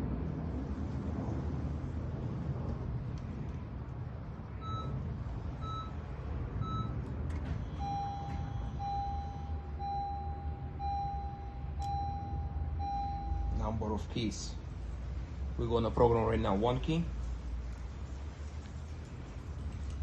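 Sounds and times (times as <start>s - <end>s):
steady low rumble: 0.0s - 20.0s
electronic beeps: 4.6s - 5.0s, 7.8s - 13.6s.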